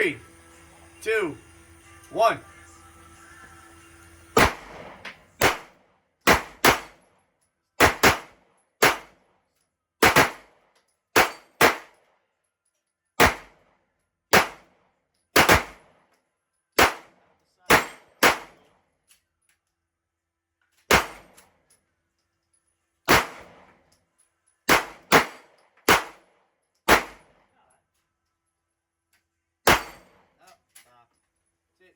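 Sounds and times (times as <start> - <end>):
pistol shots: 4.4 - 7.0, 7.8 - 9.2, 10.0 - 10.5, 11.2 - 11.9, 13.2 - 13.6, 14.3 - 14.7, 15.4 - 15.8, 16.8 - 18.6, 20.9 - 21.3, 23.1 - 23.7, 24.7 - 26.2, 26.9 - 27.3, 29.7 - 30.1.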